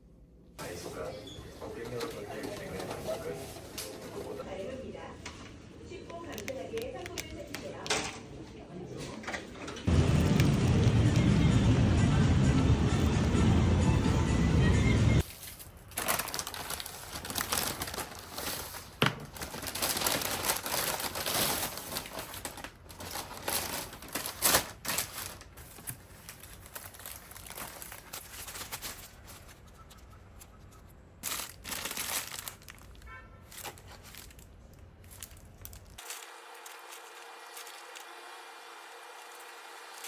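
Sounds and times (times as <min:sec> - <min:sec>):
crinkling and rustling: 0:01.6 - 0:05.5, 0:15.2 - 0:38.1.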